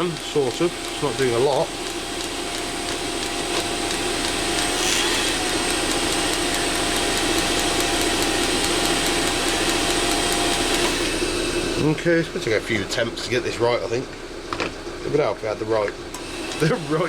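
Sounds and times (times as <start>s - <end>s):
fuel pump ticking: 0.0s - 11.1s
heater blower whirring hum: 0.0s - 17.0s.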